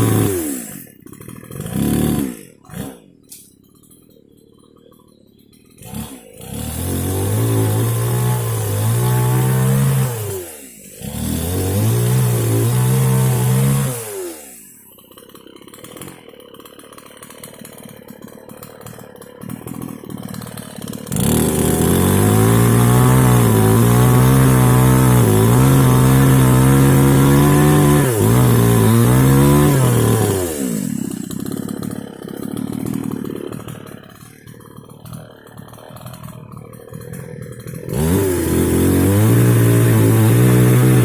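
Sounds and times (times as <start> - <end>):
mini chainsaw revving and idling: 0.0 - 41.0.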